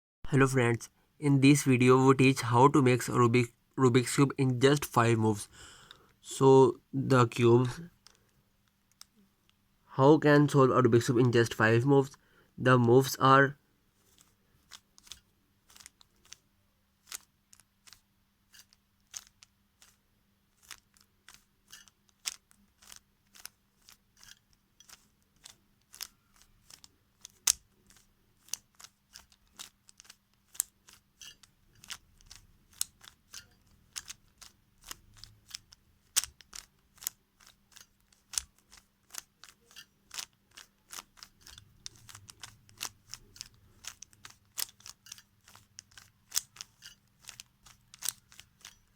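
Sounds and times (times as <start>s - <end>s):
puzzle cube layers clicking: 14.0s - 16.4s, 17.0s - 48.9s.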